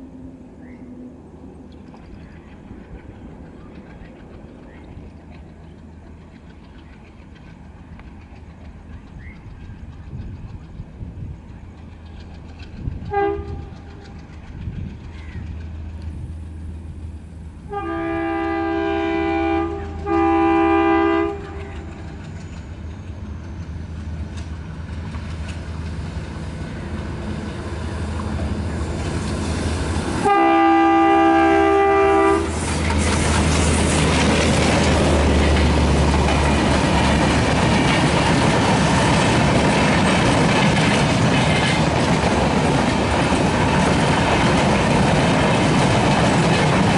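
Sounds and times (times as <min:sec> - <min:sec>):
diesel locomotive engine chugging: 0:00.0 - 0:46.9
train wheels clattering on rails: 0:01.7 - 0:46.9
train horn blasts: 0:13.1 - 0:14.2, 0:17.6 - 0:22.0, 0:30.2 - 0:32.7.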